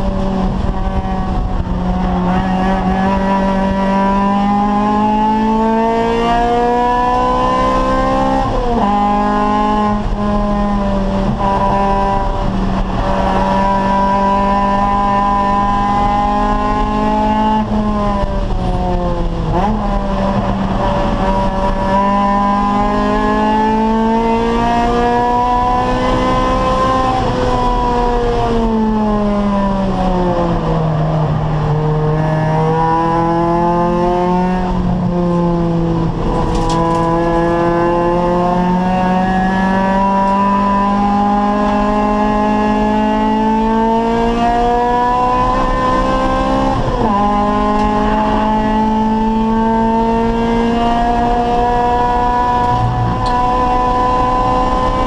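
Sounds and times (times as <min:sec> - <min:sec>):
race car engine pulling hard: 0:00.0 - 0:55.0
gear change: 0:34.6 - 0:39.1.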